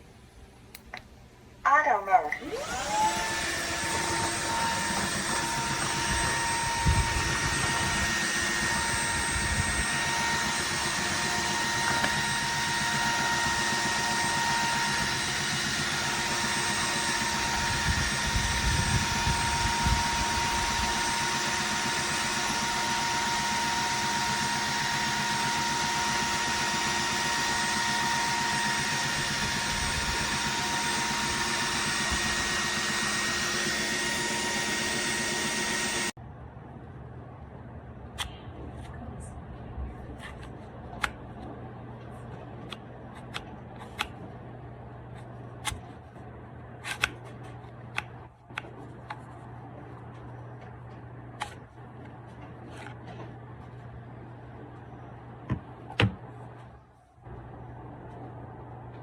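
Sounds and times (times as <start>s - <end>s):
vacuum cleaner running: 2.3s - 36.2s.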